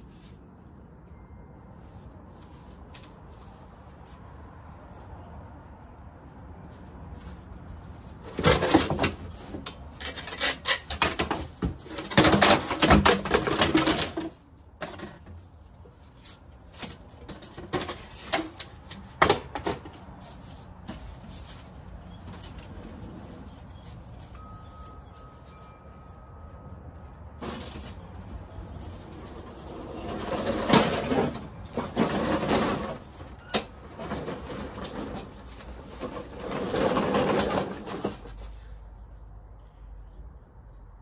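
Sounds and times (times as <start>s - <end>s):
things clattering and rustling: 7.2s - 26.7s, 27.3s - 38.6s.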